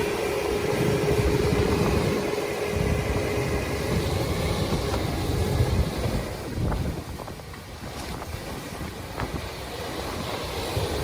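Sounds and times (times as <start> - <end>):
vehicle engine running: 0.0 - 6.6
steady whine: 0.0 - 11.0.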